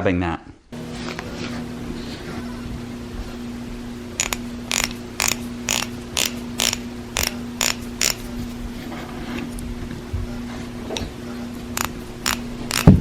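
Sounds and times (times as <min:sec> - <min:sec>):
ratchet wrench clicking: 0:04.2 - 0:08.2, 0:11.8 - 0:13.0.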